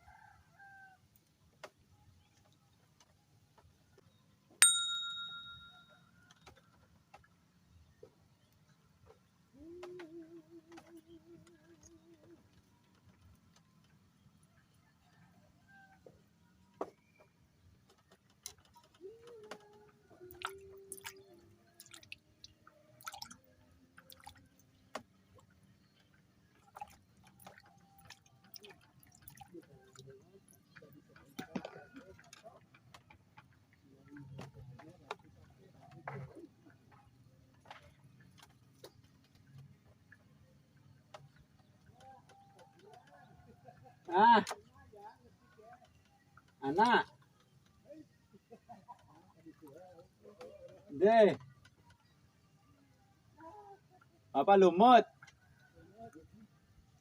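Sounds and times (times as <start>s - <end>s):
metallic ding ringing: 4.6s - 6.0s
faint held tone: 4.6s - 6.3s
faint clicks and knocks: 16.0s - 21.8s.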